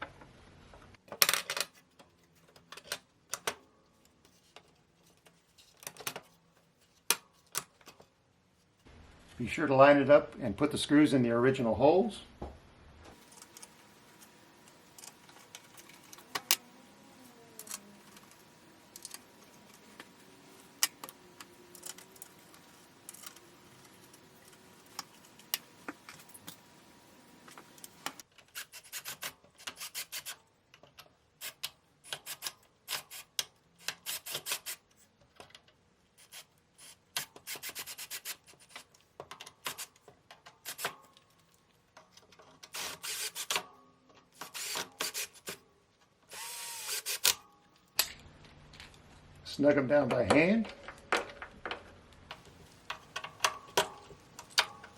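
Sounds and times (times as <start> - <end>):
screws rasping into wood: 28.6 - 30.4, 31.4 - 34.8, 36.2 - 38.7, 42.7 - 43.6, 44.4 - 45.6, 46.3 - 47.4.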